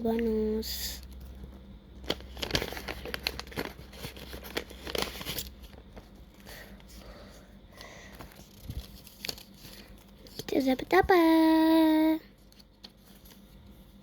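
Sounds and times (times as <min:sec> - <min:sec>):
paper envelopes crinkling: 0:01.1 - 0:06.9, 0:08.1 - 0:11.0.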